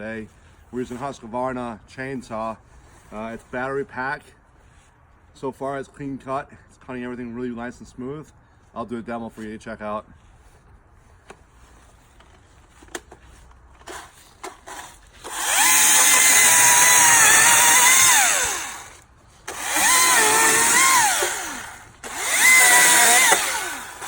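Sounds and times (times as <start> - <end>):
electric chainsaw whining: 13.8 - 24.0.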